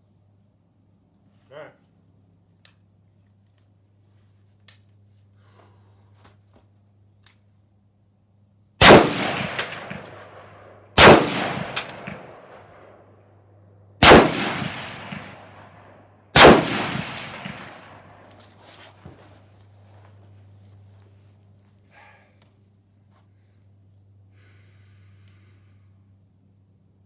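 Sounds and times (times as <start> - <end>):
rifle shots echoing: 8.8 - 13.0, 14.0 - 18.3.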